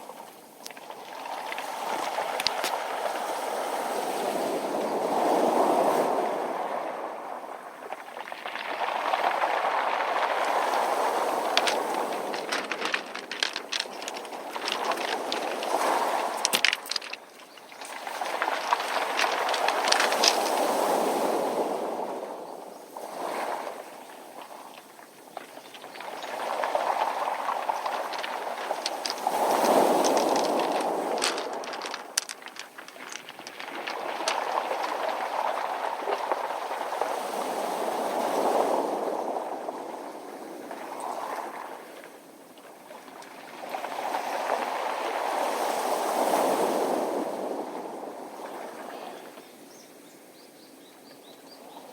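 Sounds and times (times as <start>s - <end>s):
waves washing onto pebbles: 0.0s - 49.4s
pebbles knocking together: 0.6s - 3.0s, 8.2s - 21.2s, 24.8s - 37.0s.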